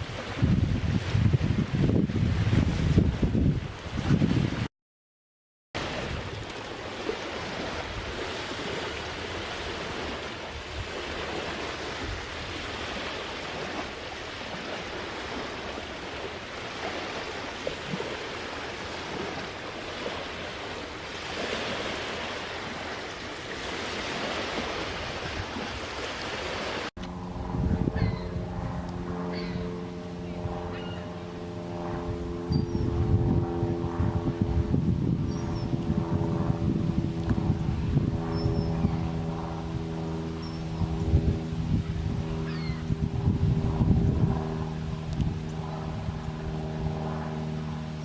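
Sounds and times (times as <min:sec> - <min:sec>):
waves washing onto a beach: 0:05.8 - 0:26.9.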